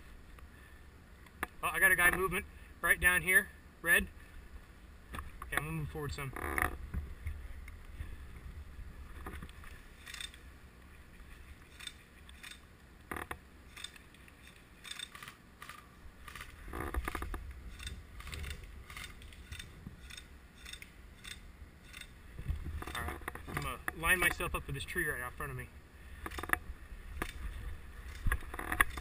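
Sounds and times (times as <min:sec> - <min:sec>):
wind rumble: 0:04.4 - 0:11.8, 0:21.5 - 0:23.6
microphone handling noise: 0:05.1 - 0:09.8, 0:16.4 - 0:20.0, 0:22.3 - 0:24.4.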